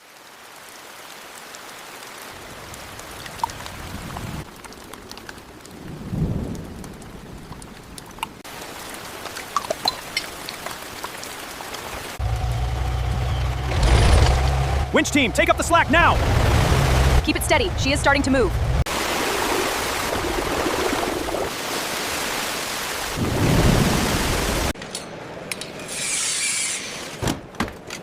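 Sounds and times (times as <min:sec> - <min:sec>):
rain pattering: 0:00.0 - 0:12.6, 0:14.9 - 0:24.8
rolling thunder: 0:05.8 - 0:07.5, 0:23.2 - 0:24.7.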